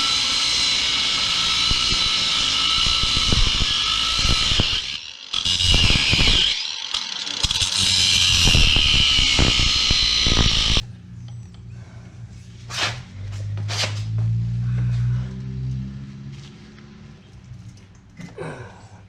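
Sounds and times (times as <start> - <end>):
power tool grinding metal: 0.0 - 10.9
low hum: 7.8 - 19.0.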